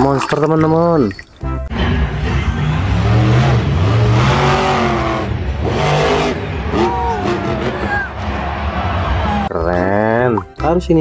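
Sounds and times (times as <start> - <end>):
monster truck engine revving: 1.7 - 9.5.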